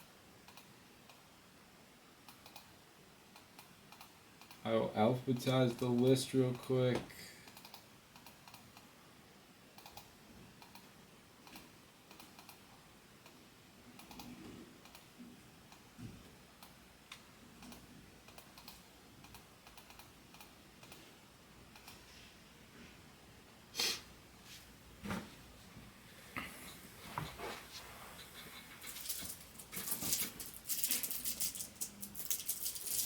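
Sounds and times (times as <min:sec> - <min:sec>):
computer keyboard typing: 0:02.3 - 0:02.7, 0:09.8 - 0:12.6, 0:14.0 - 0:15.1, 0:17.6 - 0:21.0.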